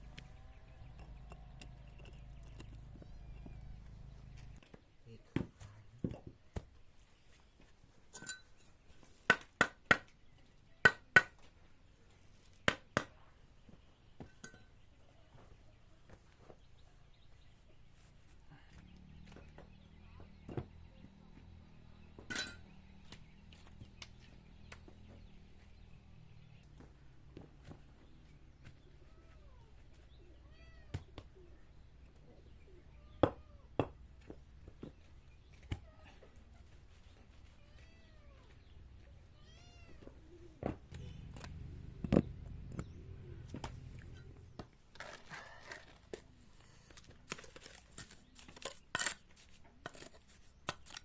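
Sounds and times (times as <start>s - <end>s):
cat meowing: 37.6s - 38.5s, 39.4s - 40.1s.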